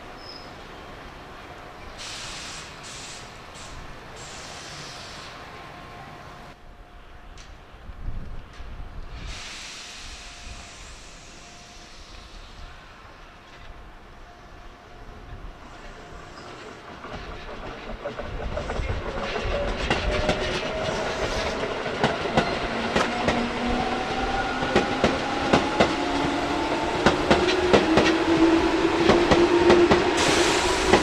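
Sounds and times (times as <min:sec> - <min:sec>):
train wheels clacking over rail joints: 0:16.2 - 0:31.0
electric train motors whining: 0:18.4 - 0:31.0.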